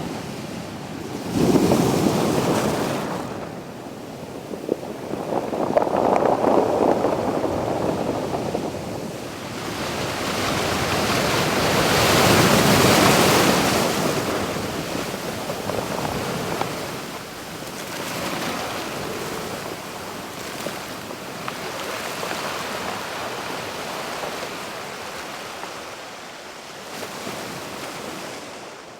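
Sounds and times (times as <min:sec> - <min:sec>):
ocean surf breaking: 0:00.2 - 0:21.0.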